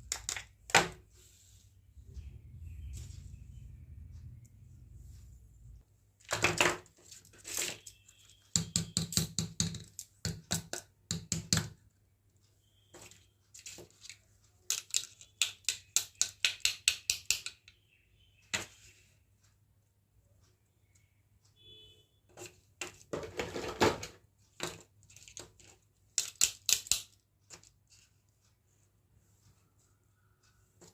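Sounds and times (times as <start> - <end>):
plastic toy pieces clicking: 14.1 - 17.7, 24.6 - 27.7.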